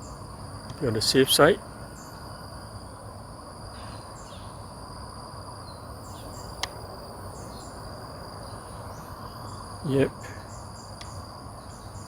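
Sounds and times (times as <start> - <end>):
insects trilling: 0.0 - 12.0
bird chirps: 3.7 - 4.6, 5.6 - 6.6, 7.3 - 7.8, 8.4 - 12.0.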